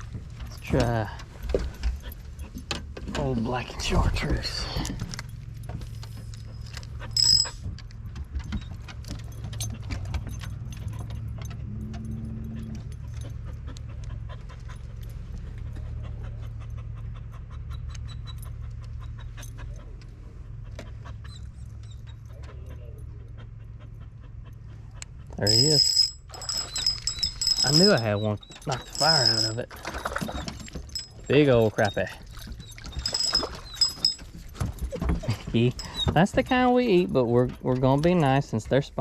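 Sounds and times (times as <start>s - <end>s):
dog squeaking: 21.0s - 22.2s, 25.4s - 36.3s.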